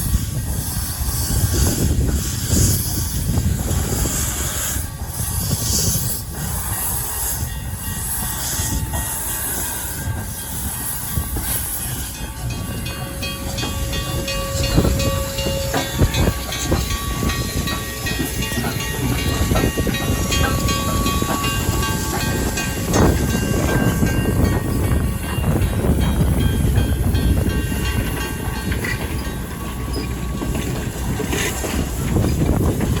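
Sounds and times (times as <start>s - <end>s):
hiss: 0.0s - 24.1s
train rumbling on rails: 0.0s - 33.0s.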